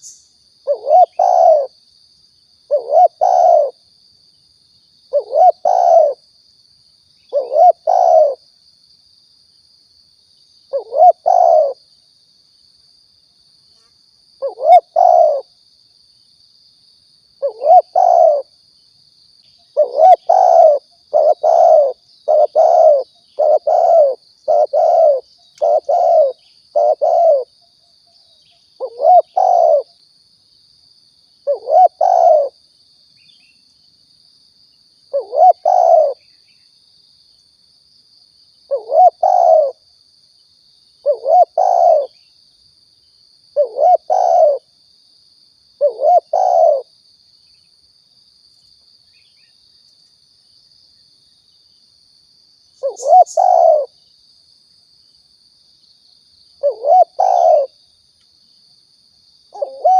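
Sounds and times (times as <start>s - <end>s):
dove cooing: 0.6s - 1.8s, 2.7s - 3.8s, 5.1s - 6.2s, 7.3s - 8.4s, 10.7s - 11.8s, 14.4s - 15.5s, 17.4s - 18.5s, 19.8s - 27.5s, 28.8s - 29.9s, 31.4s - 32.6s, 35.1s - 36.2s, 38.7s - 39.8s, 41.0s - 42.2s, 43.6s - 44.7s, 45.8s - 46.9s, 52.8s - 54.0s, 56.6s - 57.8s, 59.5s - 59.9s.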